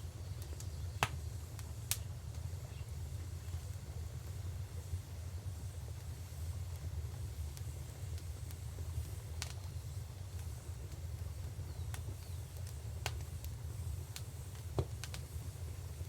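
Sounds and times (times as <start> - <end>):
wood fire crackling: 0.0 - 16.0.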